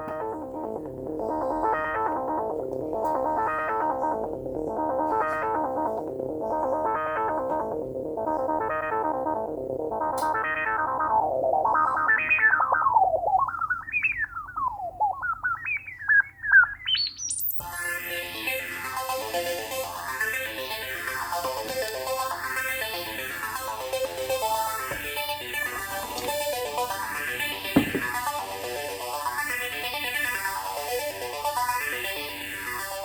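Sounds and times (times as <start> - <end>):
synthesizer chord: 0.0 - 16.5
gliding synthesizer tone: 0.0 - 18.5.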